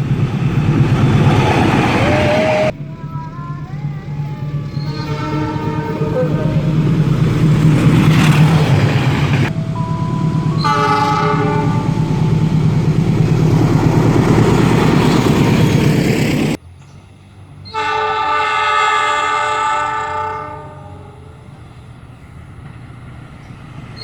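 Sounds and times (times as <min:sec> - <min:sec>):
train rumble: 0:00.0 - 0:24.0
locomotive air horn: 0:03.8 - 0:08.8, 0:09.4 - 0:15.8, 0:17.7 - 0:21.4.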